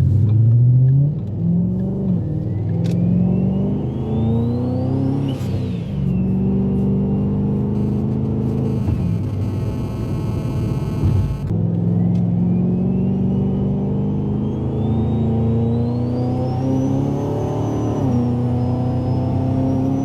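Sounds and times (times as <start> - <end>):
car engine running hard: 3.9 - 20.0
thin high whine: 7.7 - 11.5.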